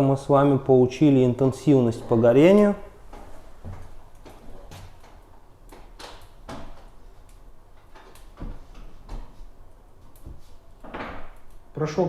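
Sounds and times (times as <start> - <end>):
wood fire crackling in stove: 0.0 - 12.0
sharp snaps of fire: 4.1 - 8.8, 9.7 - 11.7.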